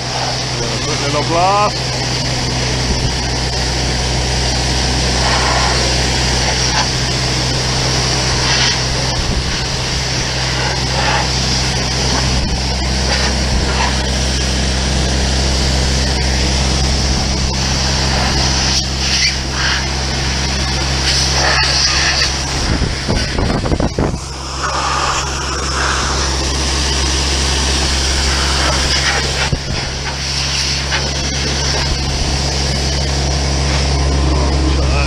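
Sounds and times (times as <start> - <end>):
air compressor droning: 0.0 - 35.0
air blow gun hissing: 4.3 - 14.6, 16.2 - 32.7.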